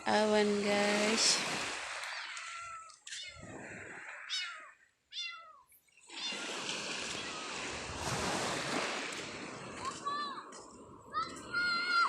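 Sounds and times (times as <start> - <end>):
seawater washing onto beach: 0.0 - 4.4, 6.1 - 12.0
cat meowing: 2.4 - 3.4, 4.3 - 6.4.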